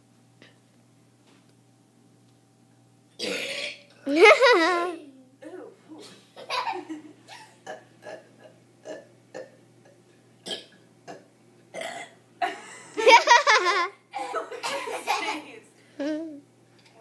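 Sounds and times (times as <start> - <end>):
children burping: 3.2 - 3.8, 7.7 - 9.6, 10.4 - 12.6.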